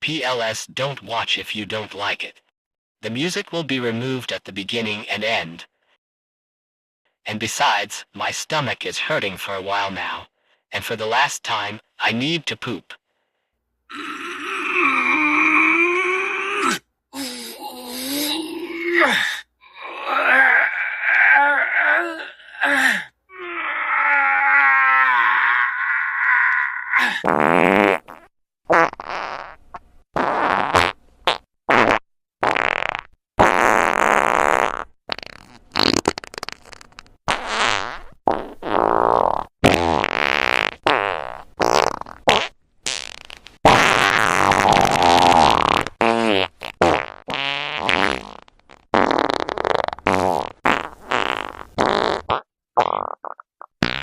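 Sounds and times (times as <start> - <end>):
farting sounds: 25.9 - 54.0.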